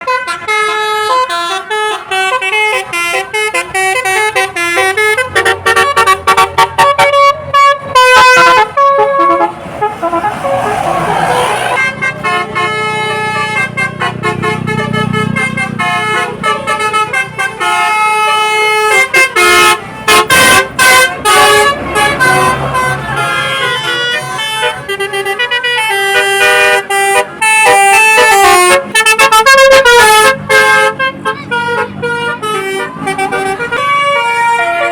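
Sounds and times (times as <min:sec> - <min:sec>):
multi-tone air horns melody: 0:00.0 - 0:34.9.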